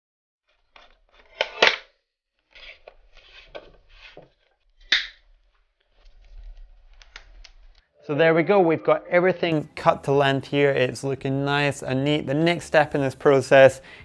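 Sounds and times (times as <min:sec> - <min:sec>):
rustling and rubbing: 0:02.4 - 0:07.8.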